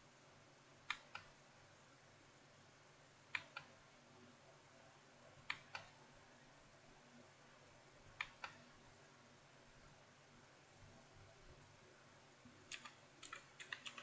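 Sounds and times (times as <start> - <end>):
mechanical keyboard clicks: 12.7 - 14.0.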